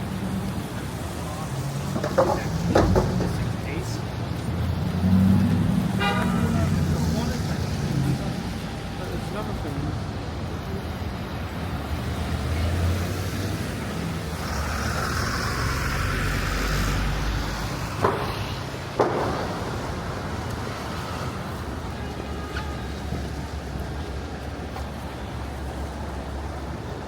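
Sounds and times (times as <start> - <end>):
traffic rumble: 0.0 - 27.0
vehicle passing: 1.2 - 8.8, 11.6 - 22.0
sharp knocks: 2.0 - 3.6, 17.9 - 20.5.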